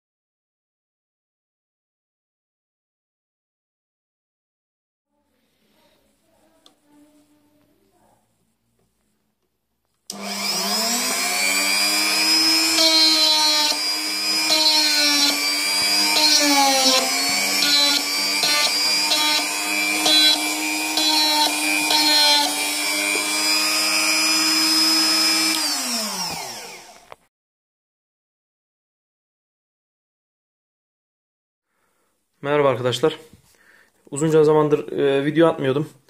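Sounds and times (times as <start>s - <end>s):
rotary tool whining: 10.1s - 27.2s.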